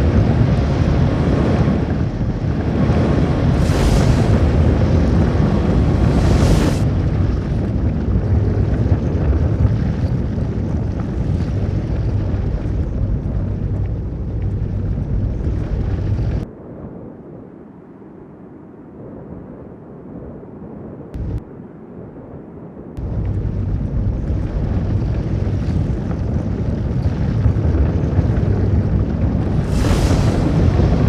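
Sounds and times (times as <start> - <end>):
heavy wind with low rumble: 0.0 - 31.0
muffled wind: 0.0 - 31.0.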